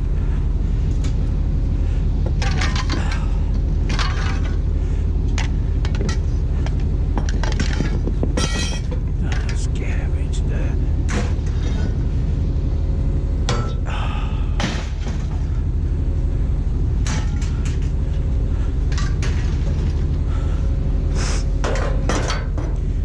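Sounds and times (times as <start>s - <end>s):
low mechanical rumble: 0.0s - 23.0s
knocks and rattles: 2.2s - 4.7s, 5.3s - 9.7s, 14.6s - 15.7s, 21.6s - 22.8s.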